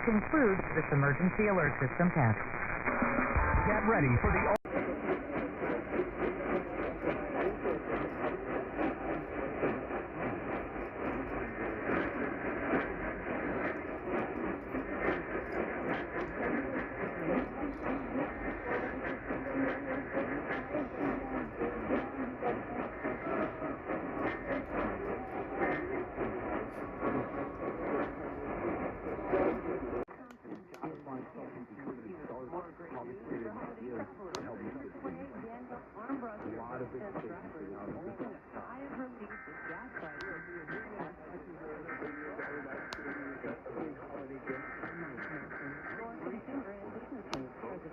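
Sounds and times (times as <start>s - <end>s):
radio static hiss: 0.0s - 4.6s, 39.2s - 47.9s
static crackles: 0.0s - 4.6s.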